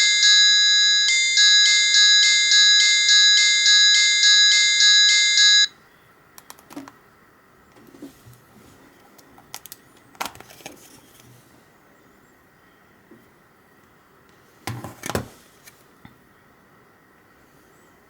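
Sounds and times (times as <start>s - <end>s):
phone ringtone: 0.0s - 5.8s.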